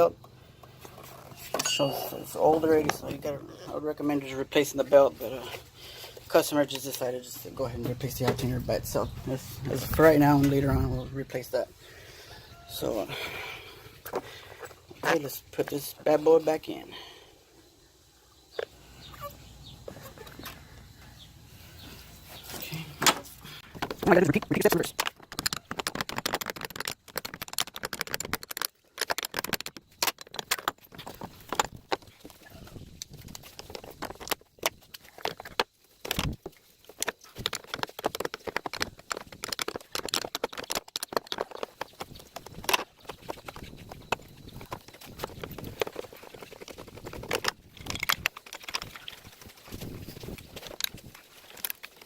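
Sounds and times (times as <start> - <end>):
metal tools clinking and scraping: 0.0 - 11.3.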